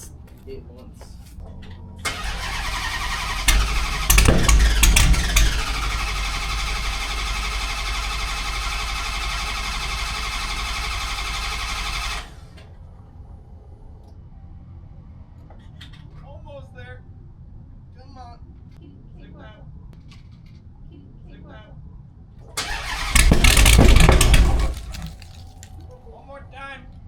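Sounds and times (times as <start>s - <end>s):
loud engine pops: 2.1s - 12.3s, 22.6s - 25.4s
engine starter cranking: 2.1s - 12.4s, 22.6s - 25.6s.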